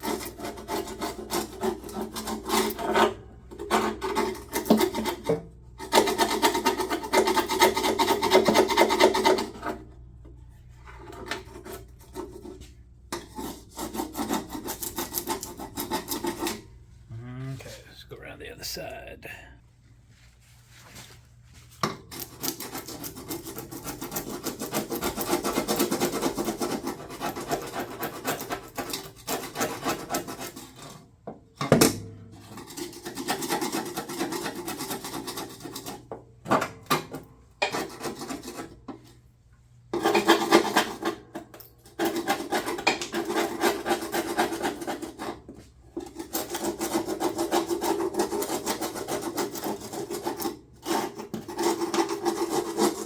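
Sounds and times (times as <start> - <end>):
scraper rasping on metal: 0.0 - 9.8, 13.2 - 16.7, 22.2 - 31.0, 32.5 - 36.0, 37.6 - 38.8, 41.9 - 53.0.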